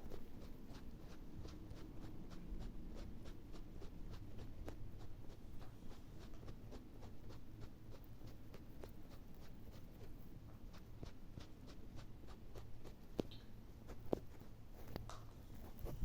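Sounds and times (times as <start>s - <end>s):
rabbit clicks and scratches: 0.0s - 16.0s.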